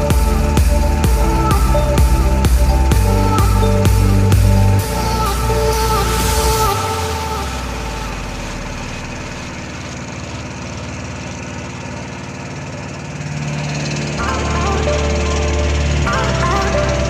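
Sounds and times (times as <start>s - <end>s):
music: 0.0s - 8.5s, 14.0s - 17.0s
engine droning: 0.0s - 17.0s.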